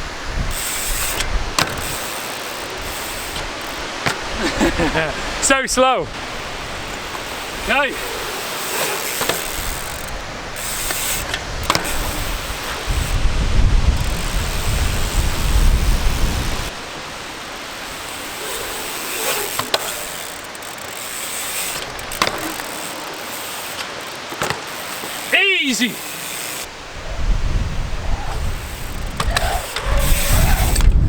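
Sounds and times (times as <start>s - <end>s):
wind buffeting microphone: 0.0s - 5.4s, 6.0s - 20.4s, 26.7s - 31.0s
mountain bike riding on ramps: 0.0s - 5.5s, 6.1s - 31.0s.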